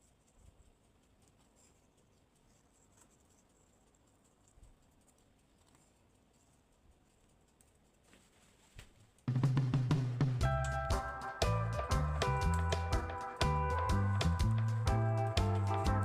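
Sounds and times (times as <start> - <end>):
background music: 9.7 - 16.0.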